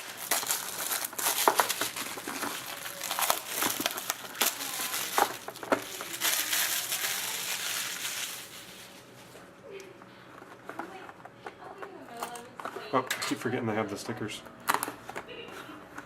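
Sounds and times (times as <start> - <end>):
packaging crinkling: 0.0 - 9.2.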